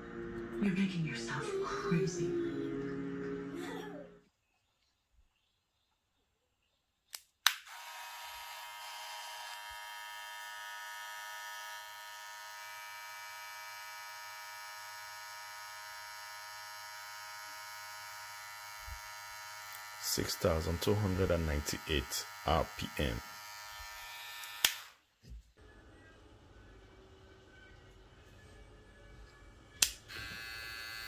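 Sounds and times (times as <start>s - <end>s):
hair clipper motor buzzing: 7.5s - 25.0s, 29.8s - 31.0s
clipper switch clicks: 29.8s - 30.0s.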